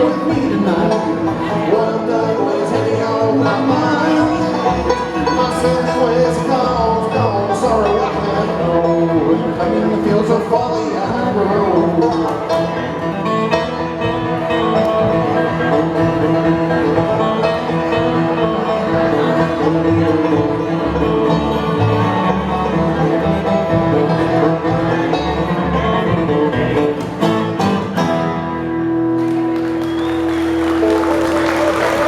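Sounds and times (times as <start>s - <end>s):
bluegrass band playing: 0.0s - 32.0s
applause: 29.2s - 32.0s.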